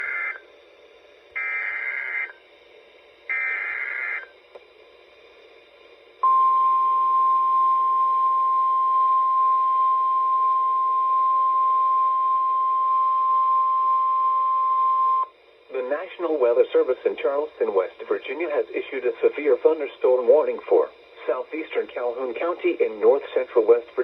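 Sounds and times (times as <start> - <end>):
screechy data bursts: 0.0 - 0.4, 1.4 - 2.4, 3.3 - 4.3
faint radio hiss: 0.0 - 24.0.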